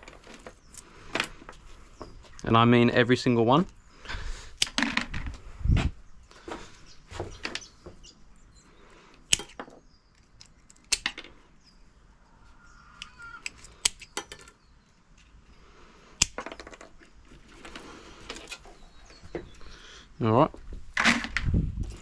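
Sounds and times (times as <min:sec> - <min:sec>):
cutters snipping electrical cords: 0:04.5 - 0:05.0, 0:09.1 - 0:09.6, 0:10.2 - 0:11.2, 0:13.0 - 0:14.3, 0:16.2 - 0:16.4.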